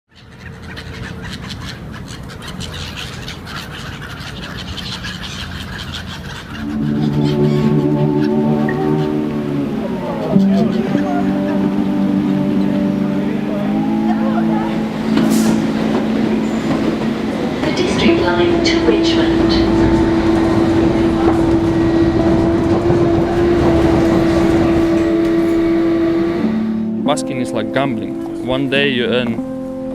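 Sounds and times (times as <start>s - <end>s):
bird chirps: 0.1s - 12.8s
low city rumble: 0.1s - 29.9s
train whine: 6.4s - 29.8s.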